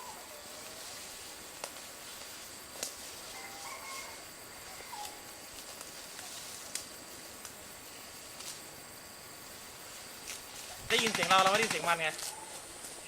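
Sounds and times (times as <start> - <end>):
insects droning high-pitched: 0.0 - 13.0
faint sharp snaps: 2.8 - 3.0, 5.0 - 7.6.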